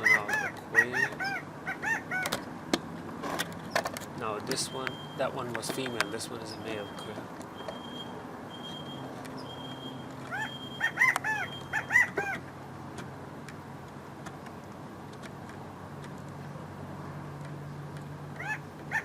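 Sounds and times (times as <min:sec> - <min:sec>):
quail calling: 0:00.0 - 0:02.4, 0:08.7 - 0:12.4, 0:18.4 - 0:19.0.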